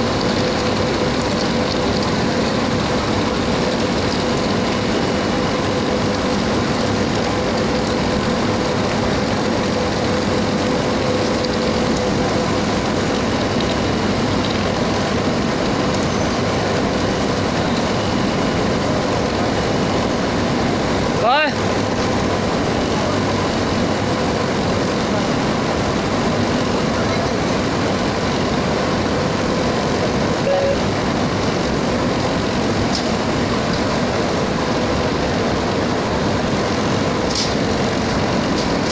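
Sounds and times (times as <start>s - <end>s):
furnace humming tone: 0.0s - 38.9s
industrial din: 30.2s - 34.2s.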